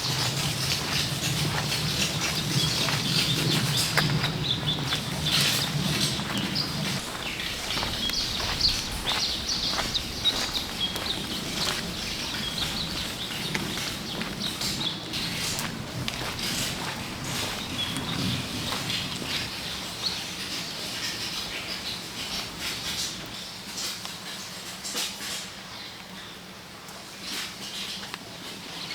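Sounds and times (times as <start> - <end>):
small birds chirping: 0.0 - 22.6
low hum: 0.3 - 19.4.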